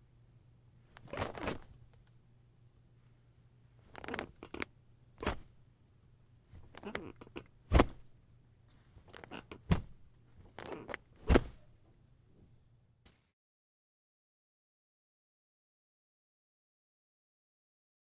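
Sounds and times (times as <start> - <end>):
mattress creaking and squeaking: 1.0 - 1.7, 3.9 - 4.6, 6.6 - 8.0, 9.0 - 11.6.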